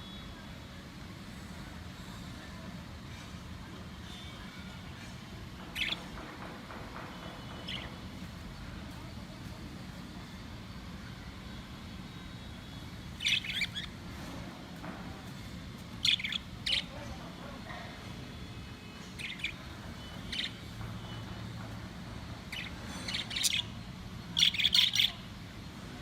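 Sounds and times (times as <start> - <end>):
budgerigars chirping: 13.2 - 13.9, 16.0 - 17.0, 20.2 - 20.6, 22.5 - 23.8, 24.4 - 25.2.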